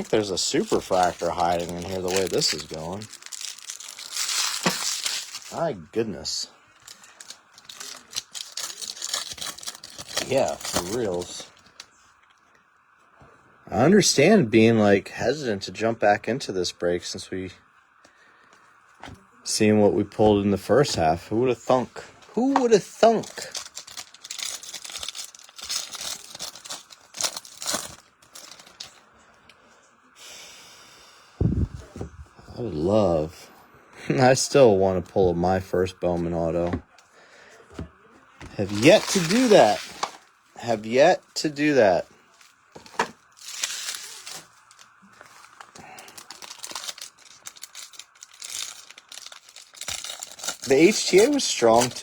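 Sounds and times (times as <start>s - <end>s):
wrappers and cards crinkling: 0.0s - 11.9s, 22.4s - 29.1s, 38.5s - 52.0s.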